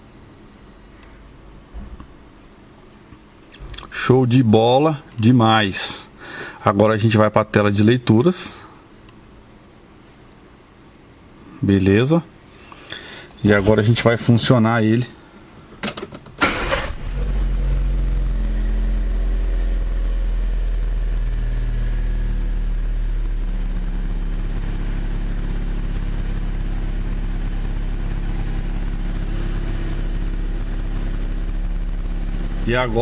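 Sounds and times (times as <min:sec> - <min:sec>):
car engine cranking: 0:15.8 - 0:18.6
car engine idling: 0:16.4 - 0:33.0.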